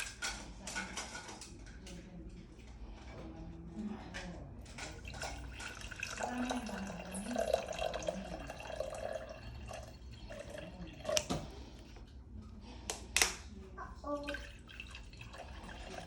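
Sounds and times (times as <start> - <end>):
liquid trickling into container: 4.7 - 11.5, 14.1 - 16.0.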